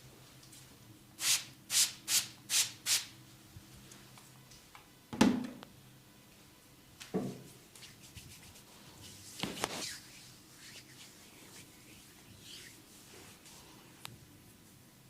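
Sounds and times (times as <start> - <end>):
faint rubbing of skin: 7.7 - 14.0
hands stroking skin: 7.8 - 13.7.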